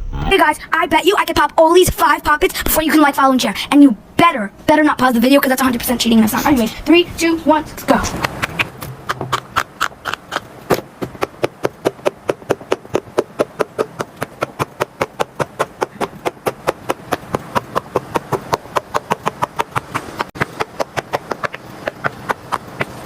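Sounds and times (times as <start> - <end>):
pop-it toy popping: 8.2 - 22.9.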